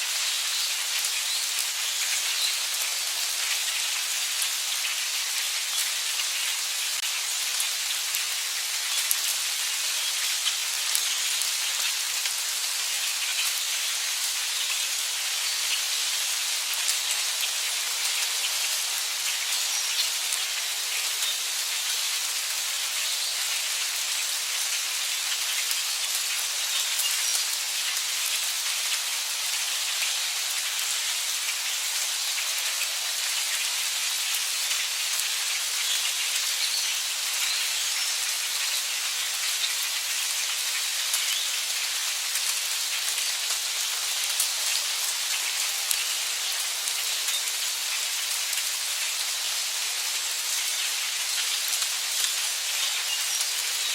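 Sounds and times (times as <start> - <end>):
heavy rain: 0.0 - 53.9.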